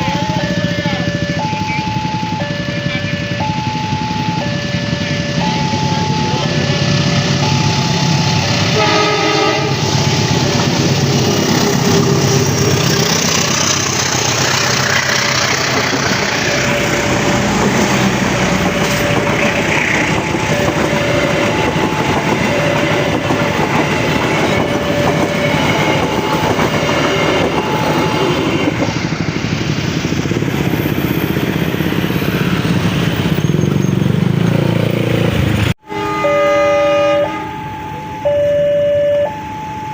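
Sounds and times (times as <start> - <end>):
crossing alarm two-tone chime: 0.0 - 11.1, 15.1 - 29.0, 35.9 - 39.9
train rumbling past: 0.0 - 39.9
train horn blast: 8.5 - 10.1, 35.8 - 37.8
wheels clattering over rail joints: 9.9 - 29.4.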